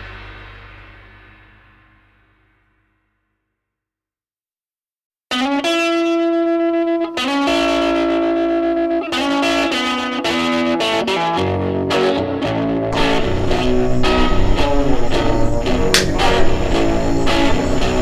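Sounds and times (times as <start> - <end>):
electric guitar with effects: 5.3 - 18.0
bass guitar: 11.6 - 18.0.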